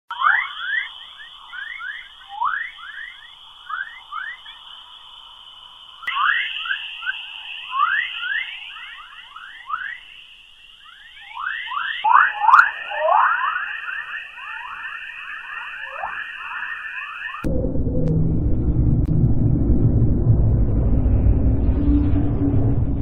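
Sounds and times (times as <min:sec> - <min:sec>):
quick falling whistles: 0:00.1 - 0:17.4
steady high tone band: 0:00.1 - 0:22.6.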